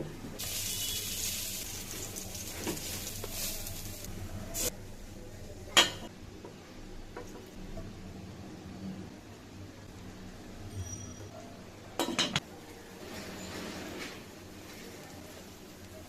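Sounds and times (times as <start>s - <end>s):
food sizzling in a pan: 0.4s - 4.7s.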